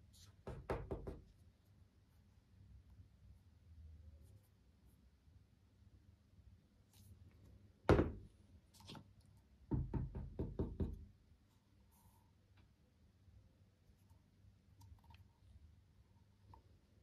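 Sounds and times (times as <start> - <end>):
knock on hard surface: 0.4 - 1.3, 7.9 - 8.3, 9.7 - 11.0.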